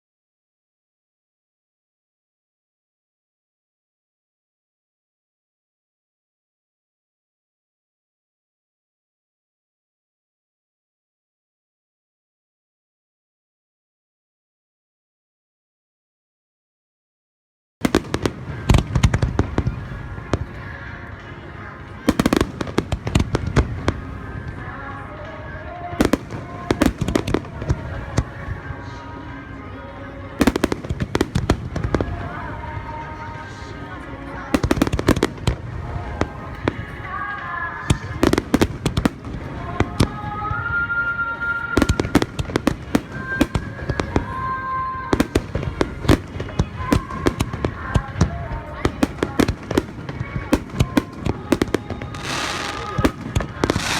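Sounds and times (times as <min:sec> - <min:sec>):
fireworks bangs and crackles: 0:17.8 - 0:53.9.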